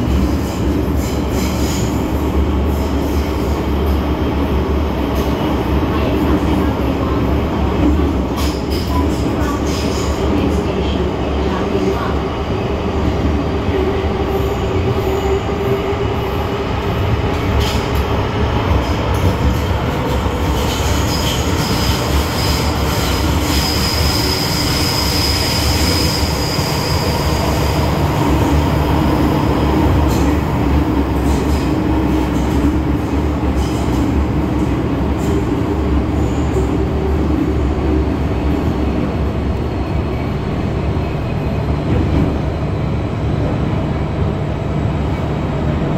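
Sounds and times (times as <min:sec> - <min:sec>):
train hum: 0:00.0 - 0:45.9
wheels rumbling on rail: 0:00.0 - 0:45.9
high wheel squeal: 0:21.6 - 0:27.6.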